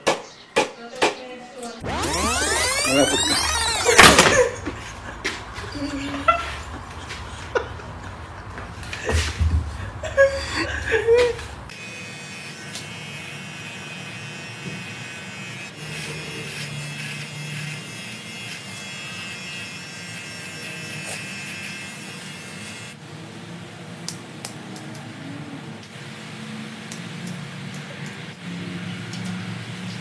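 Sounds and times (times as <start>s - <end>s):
electric hair clippers buzzing: 1.8s - 4.5s, 11.7s - 23.0s.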